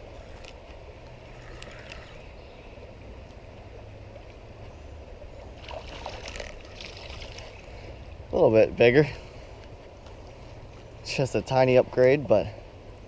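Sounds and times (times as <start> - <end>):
flowing creek: 0.0 - 13.0.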